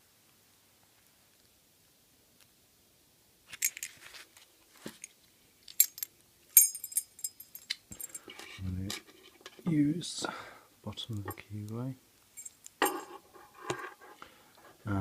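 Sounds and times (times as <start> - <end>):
metal keys jangling and clinking: 3.6 - 3.9, 5.7 - 8.3, 12.4 - 13.1.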